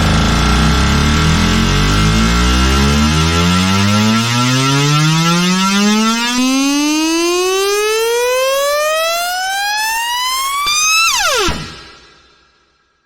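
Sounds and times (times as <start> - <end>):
piano notes merging into rising tone: 0.0 - 6.6.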